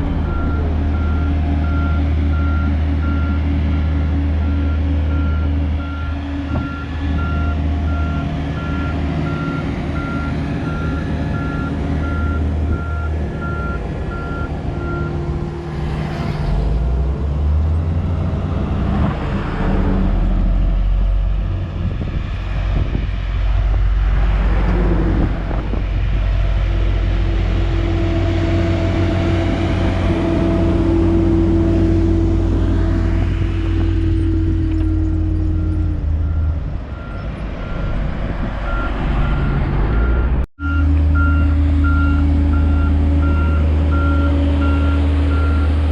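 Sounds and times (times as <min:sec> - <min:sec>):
diesel engine running: 0:00.0 - 0:45.9
reversing alarm beeping: 0:00.2 - 0:15.2, 0:34.2 - 0:45.8.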